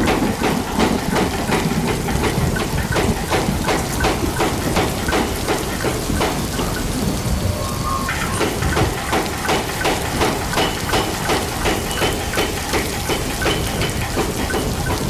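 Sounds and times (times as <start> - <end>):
power hammer striking: 8.1 - 15.0.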